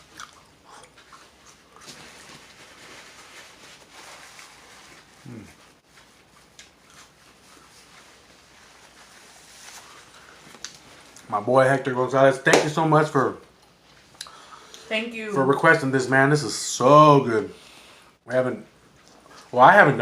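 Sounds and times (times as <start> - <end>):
person chewing: 0.0 - 2.0, 6.4 - 7.7.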